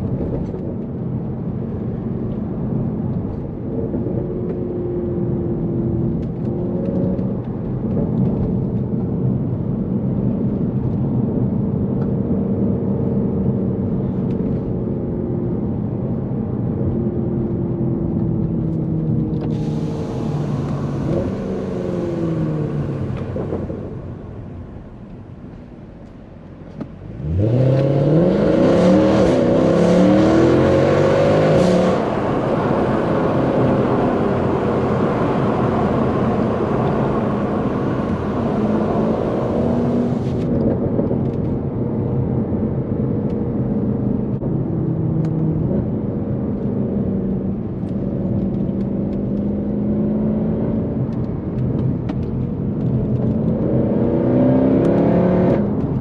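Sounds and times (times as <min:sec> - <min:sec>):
car engine accelerating hard: 0:17.7 - 0:24.5, 0:26.9 - 0:56.0.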